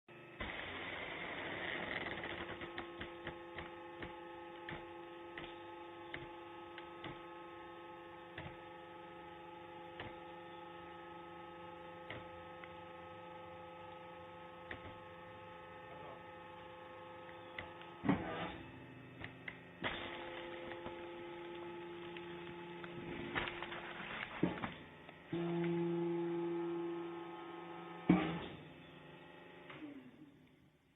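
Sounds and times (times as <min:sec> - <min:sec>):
baler motor humming: 0:00.1 - 0:30.2.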